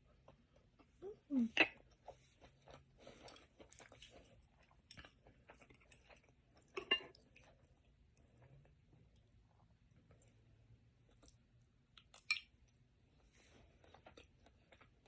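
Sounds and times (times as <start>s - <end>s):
person chewing with wet mouth sounds: 0.0s - 15.0s.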